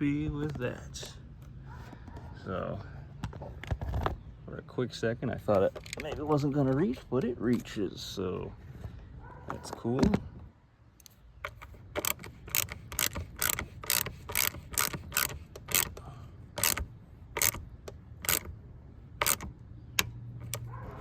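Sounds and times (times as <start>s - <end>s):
ratchet wrench clicking: 11.0s - 18.6s, 19.2s - 20.7s.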